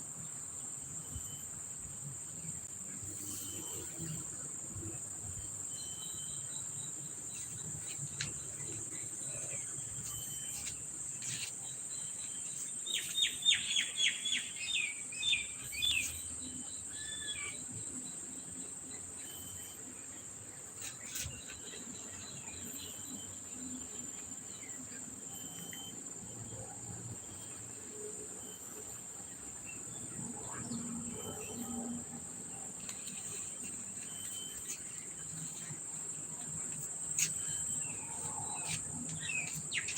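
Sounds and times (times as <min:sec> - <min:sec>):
bird chirping: 0:05.7 - 0:19.9, 0:38.6 - 0:39.9.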